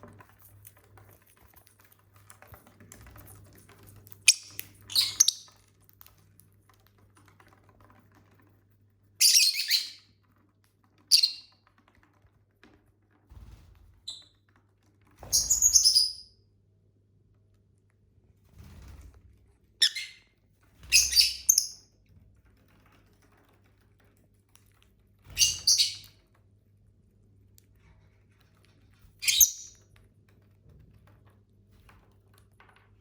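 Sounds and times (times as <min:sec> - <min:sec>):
lovebirds shrill chirps: 0:04.3 - 0:05.5, 0:09.2 - 0:10.0, 0:11.1 - 0:11.5, 0:15.3 - 0:16.3, 0:19.8 - 0:20.2, 0:20.9 - 0:21.8, 0:25.4 - 0:26.1, 0:29.2 - 0:29.8.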